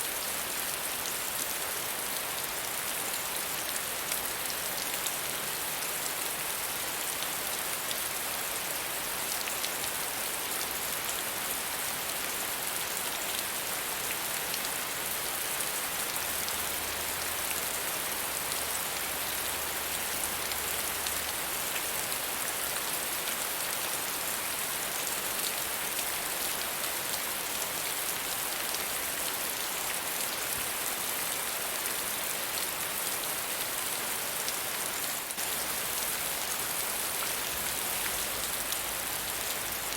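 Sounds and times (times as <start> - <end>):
soft rain pattering: 0.0 - 39.9.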